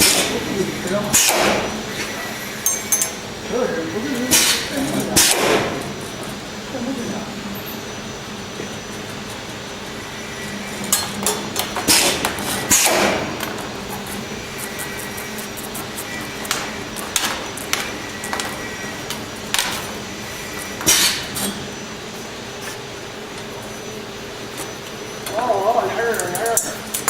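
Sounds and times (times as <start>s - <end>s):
bending machine humming: 0.0s - 27.0s
sharp metallic clacks: 4.3s - 5.9s, 10.8s - 20.0s, 20.6s - 21.6s.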